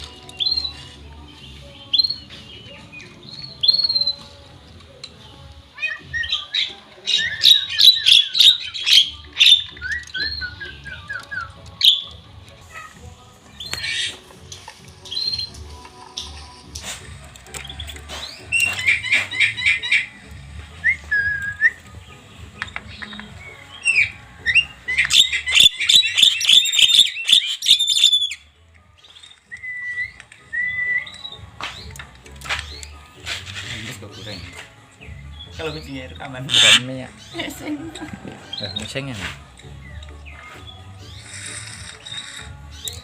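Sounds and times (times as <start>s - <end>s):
songbird singing: 0.0s - 43.0s
myna calling: 5.7s - 14.3s, 17.6s - 21.8s, 22.6s - 28.5s, 33.5s - 43.0s.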